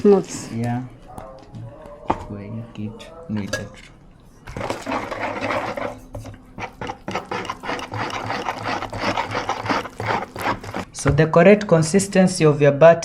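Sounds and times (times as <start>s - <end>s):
whisk beating batter in a bowl: 4.2s - 10.9s.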